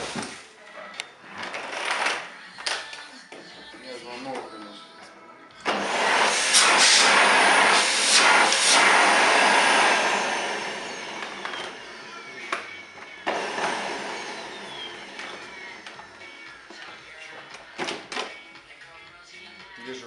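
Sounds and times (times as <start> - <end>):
vacuum cleaner running: 5.6 - 16.6.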